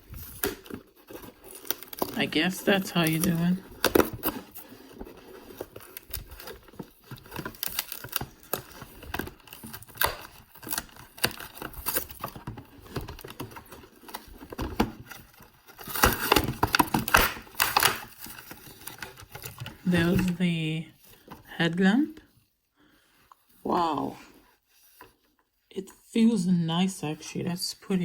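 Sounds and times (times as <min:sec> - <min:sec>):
packaging being opened by hand: 0:00.0 - 0:20.4.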